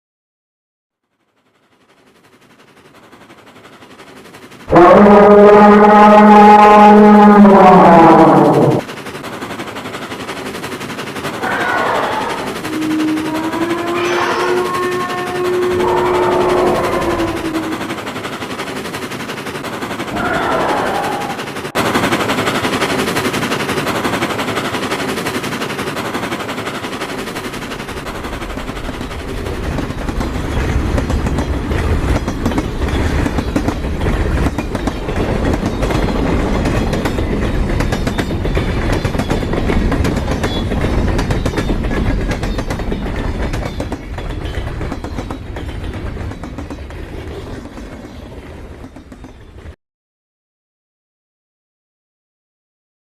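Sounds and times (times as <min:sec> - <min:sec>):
train wheels clattering on rails: 0:01.1 - 0:49.8
brief wavering tone: 0:12.1 - 0:18.0.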